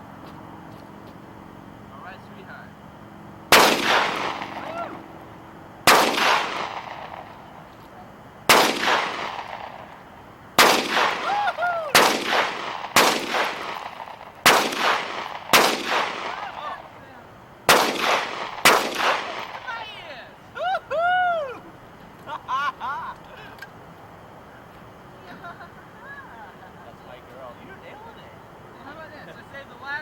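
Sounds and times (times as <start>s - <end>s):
pistol shots echoing: 3.5s - 5.0s, 5.9s - 7.5s, 8.5s - 10.0s, 10.6s - 16.9s, 17.7s - 19.8s.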